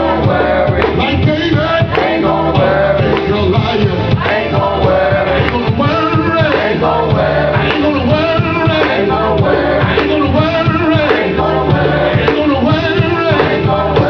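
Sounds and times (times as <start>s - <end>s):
men singing gospel with band: 0.0s - 14.0s.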